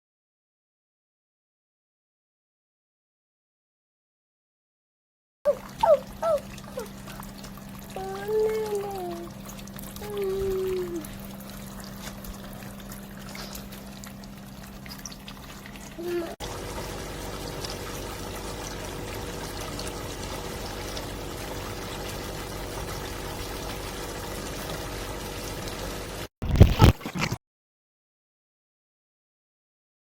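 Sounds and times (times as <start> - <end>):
water pouring and trickling: 5.5 - 27.3.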